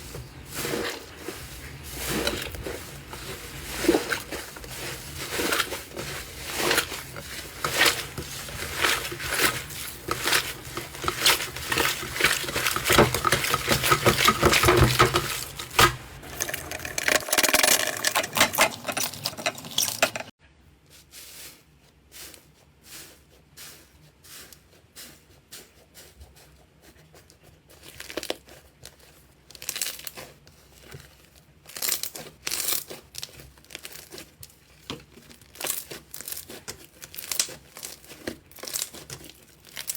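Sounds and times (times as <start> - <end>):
slime squelches: 0.0 - 20.3
slime crackling and popping: 31.6 - 39.9.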